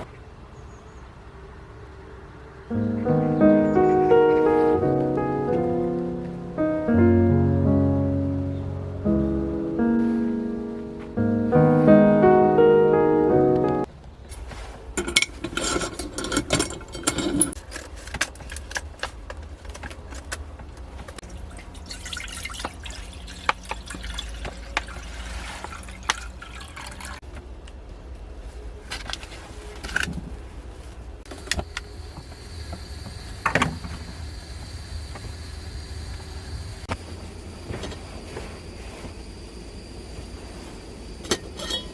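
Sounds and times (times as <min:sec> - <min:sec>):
low wind rumble: 0:27.2 - 0:41.9.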